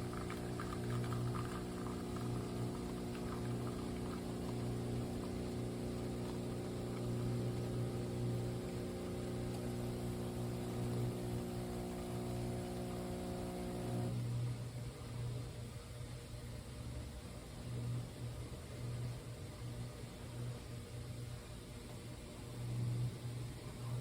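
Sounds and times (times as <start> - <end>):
espresso machine pump humming: 0.0 - 14.6.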